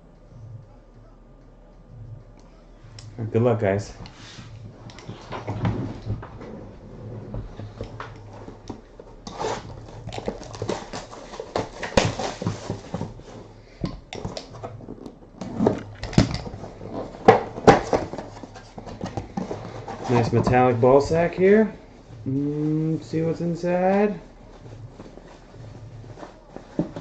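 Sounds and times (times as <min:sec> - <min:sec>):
packaging crinkling and rustling: 0:05.0 - 0:13.6.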